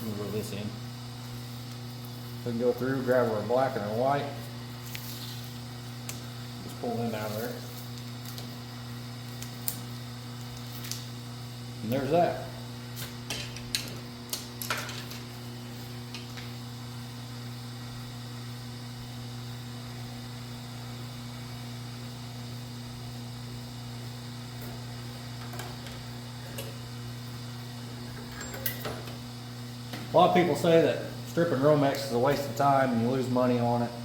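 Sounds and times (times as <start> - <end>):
electrical mains hum: 0.0 - 34.0
wire clicks and rustles: 4.8 - 8.6, 9.2 - 11.2.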